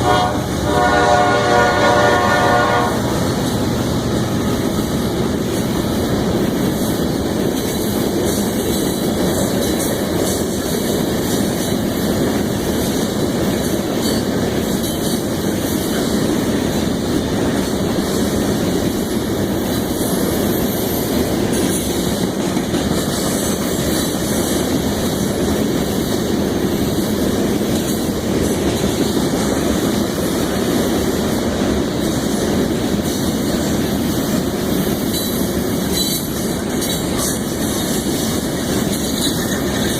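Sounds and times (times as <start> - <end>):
train cars clattering: 0.0 - 39.9
train wheels rumbling on rails: 0.0 - 39.9.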